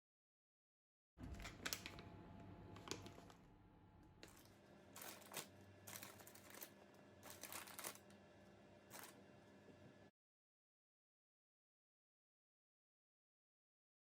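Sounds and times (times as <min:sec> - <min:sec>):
faint room hum: 0:01.2 - 0:10.1
soft handling rustles and clicks: 0:04.2 - 0:08.2, 0:08.9 - 0:09.2.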